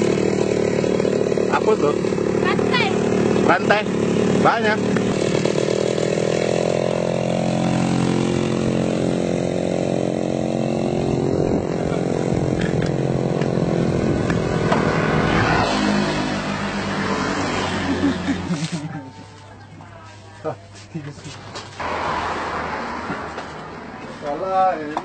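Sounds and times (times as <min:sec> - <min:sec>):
two-stroke engine revving: 0:00.0 - 0:19.1.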